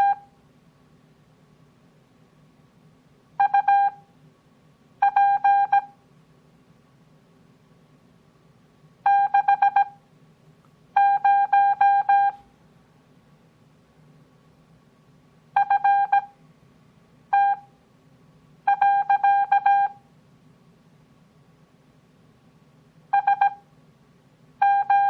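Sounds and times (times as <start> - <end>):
morse code beeps: 0.0 - 0.2, 3.4 - 4.0, 5.0 - 5.9, 9.1 - 10.0, 11.0 - 12.4, 15.6 - 16.3, 17.4 - 17.7, 18.7 - 20.0, 23.2 - 23.6, 24.6 - 25.0.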